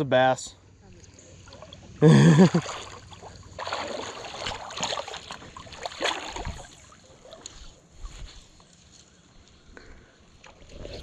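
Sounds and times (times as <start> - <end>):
river water splashing: 0.9 - 8.1.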